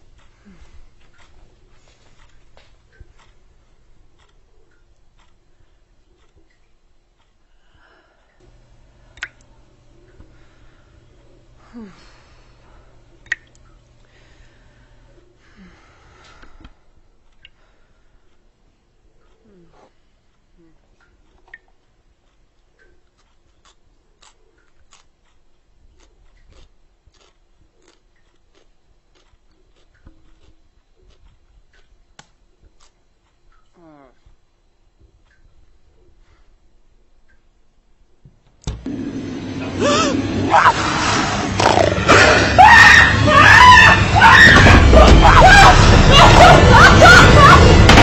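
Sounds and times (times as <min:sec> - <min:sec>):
steady low hum: 0:07.2 - 0:21.3.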